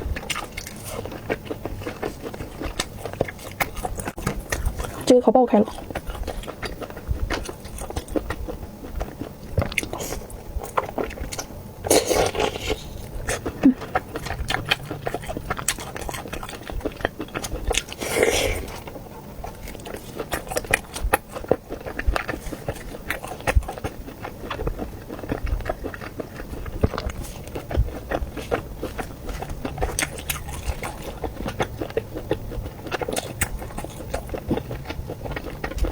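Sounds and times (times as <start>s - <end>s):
chewing mouth clicks and smacks: 0.2s - 5.1s, 12.2s - 35.9s.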